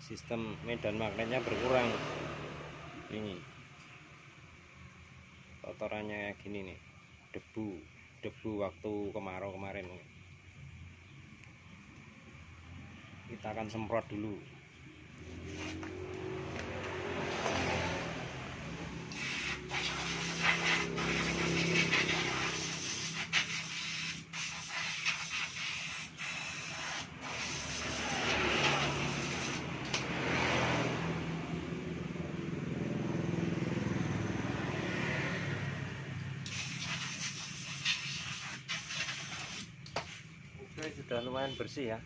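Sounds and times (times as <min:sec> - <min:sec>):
rubbing and scraping: 0:15.2 - 0:16.0, 0:19.1 - 0:29.8, 0:36.5 - 0:40.4
hissing spray: 0:19.0 - 0:29.7, 0:36.4 - 0:39.8.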